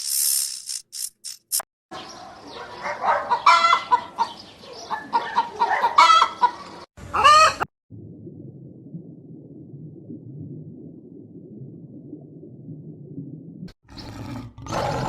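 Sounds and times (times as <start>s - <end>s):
noisy farmyard background: 1.9s - 7.7s
poultry calling: 2.6s - 7.6s.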